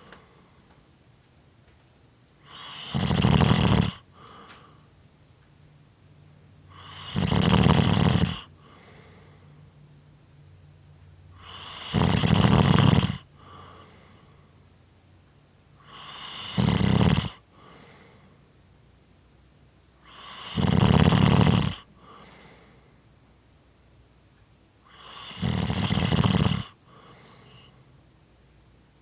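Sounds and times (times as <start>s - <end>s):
faint breath: 0.0s - 0.8s, 4.1s - 5.0s, 8.5s - 9.8s, 13.3s - 14.7s, 17.5s - 18.6s, 21.8s - 23.1s, 26.7s - 28.0s
person snoring: 2.5s - 4.4s, 6.7s - 8.8s, 11.4s - 13.3s, 15.8s - 17.4s, 20.0s - 22.3s, 24.9s - 27.4s.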